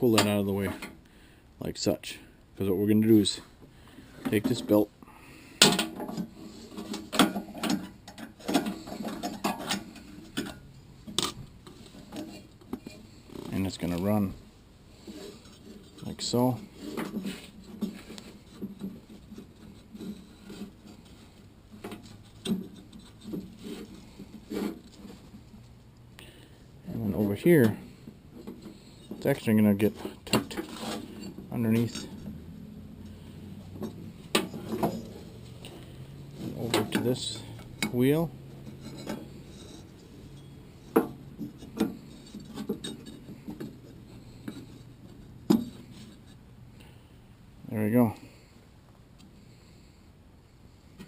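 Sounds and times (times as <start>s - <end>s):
rubber belt rubbing and scraping: 5.9s - 26.1s, 26.8s - 46.9s.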